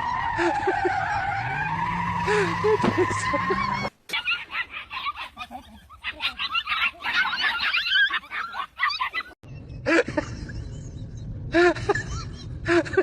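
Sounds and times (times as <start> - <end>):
low rumble: 9.5 - 13.0.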